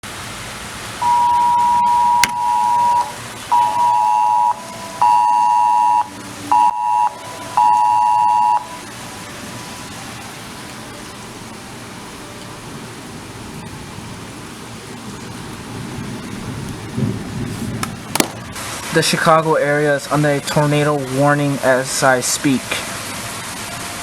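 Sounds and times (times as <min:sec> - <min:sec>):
two-note alert beep: 0:01.0 - 0:08.7.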